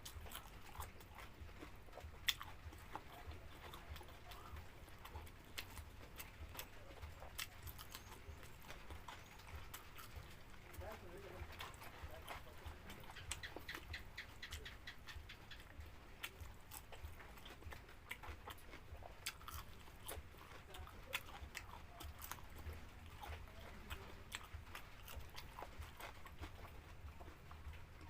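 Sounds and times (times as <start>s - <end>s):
person chewing crunchy food: 0.0s - 28.0s
mouth clicks: 11.6s - 15.8s.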